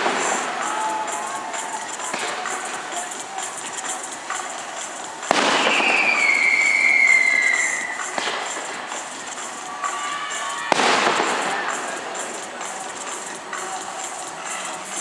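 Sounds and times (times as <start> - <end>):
firework bang: 0.0 - 0.8, 5.2 - 8.8, 10.7 - 12.5
fireworks crackling: 0.0 - 15.0
firework whistle falling: 5.2 - 8.6, 9.7 - 12.2.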